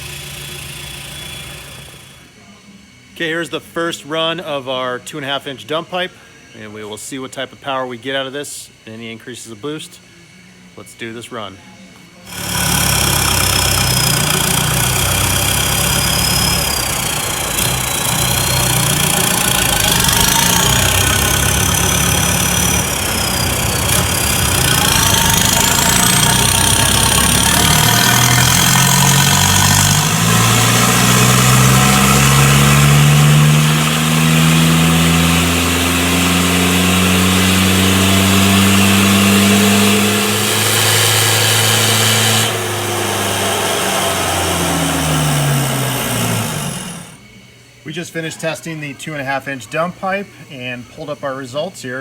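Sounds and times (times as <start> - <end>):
diesel engine revving: 0.0 - 2.3, 12.3 - 47.3.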